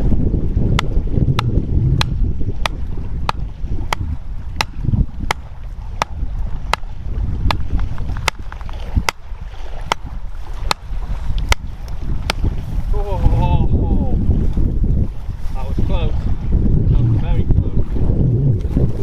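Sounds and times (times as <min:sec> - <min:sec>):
wind rumbling on microphone: 0:00.0 - 0:19.0
chopping wood: 0:00.8 - 0:12.5.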